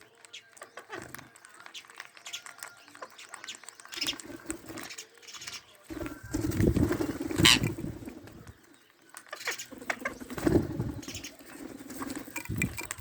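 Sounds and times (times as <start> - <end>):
parrot cooing: 7.4 - 7.8.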